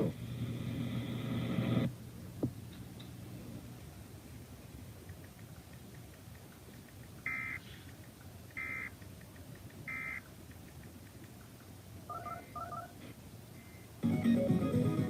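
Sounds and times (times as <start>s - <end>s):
screeching data bursts: 7.3s - 7.6s, 9.9s - 10.2s.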